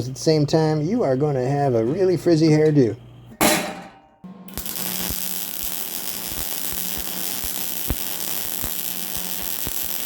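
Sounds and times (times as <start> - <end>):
welder arc buzzing and crackling: 4.3 - 10.0.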